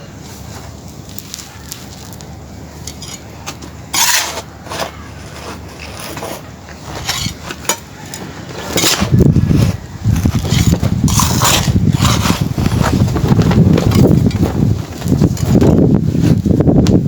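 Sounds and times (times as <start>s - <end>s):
dry material crumbling: 0.2s - 2.4s.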